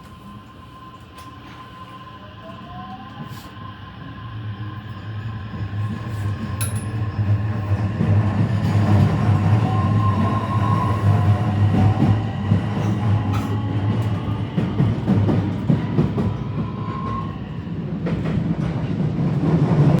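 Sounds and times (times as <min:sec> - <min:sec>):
electric train rumbling: 0:00.0 - 0:20.0
rail-joint clicks: 0:06.4 - 0:07.3, 0:10.8 - 0:17.3.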